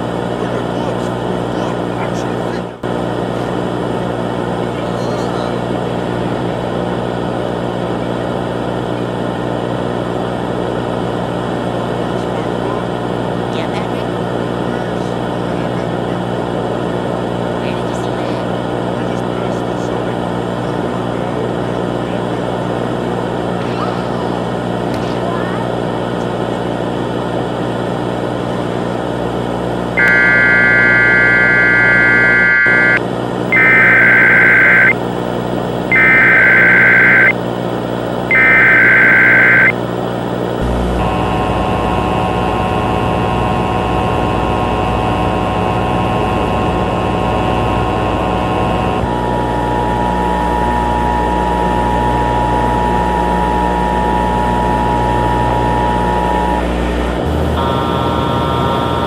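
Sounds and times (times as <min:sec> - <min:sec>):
constant low hum: 0:29.9 - 0:59.0
two-tone attention signal: 0:30.0 - 0:35.0, 0:35.9 - 0:37.4, 0:38.3 - 0:39.8
screechy data bursts: 0:30.0 - 0:40.5
high electronic tones: 0:30.0 - 0:40.7.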